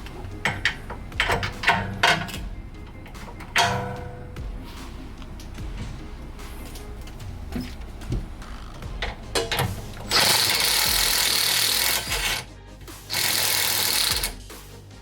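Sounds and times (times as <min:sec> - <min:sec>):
clicks and knocks: 0:00.0 - 0:04.5, 0:05.2 - 0:10.8
power tool spinning out bolts: 0:06.6 - 0:12.5, 0:13.1 - 0:14.5.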